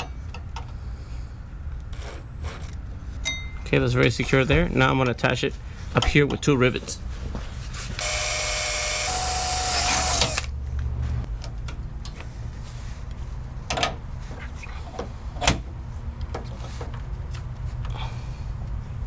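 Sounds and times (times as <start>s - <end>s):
cordless drill whirring: 8.0s - 10.5s.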